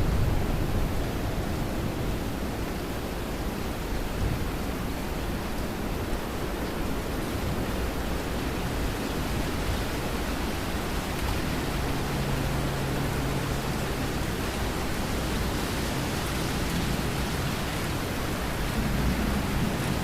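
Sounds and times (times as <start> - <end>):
steady rain hiss: 0.0 - 20.0.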